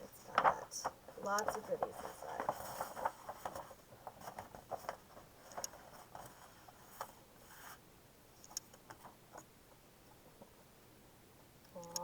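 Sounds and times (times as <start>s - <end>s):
paper and card rustling: 0.0s - 7.8s.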